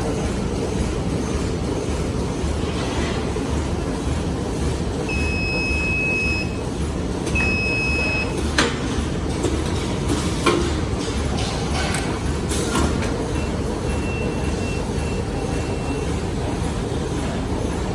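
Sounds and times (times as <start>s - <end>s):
bag making machine running: 0.0s - 17.9s.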